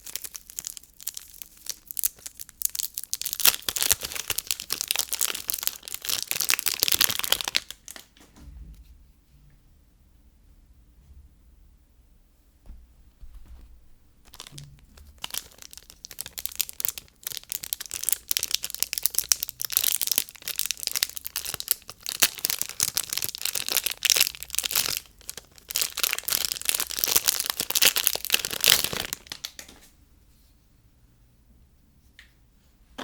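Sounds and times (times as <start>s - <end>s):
packaging crinkling and tearing: 0.0s - 8.2s, 14.2s - 29.8s.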